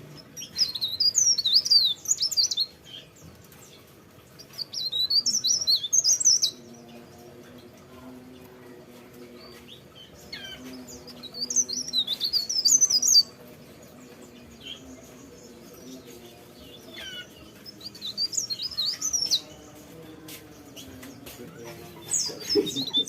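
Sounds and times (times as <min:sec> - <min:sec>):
bird twittering: 0:10.0 - 0:13.4.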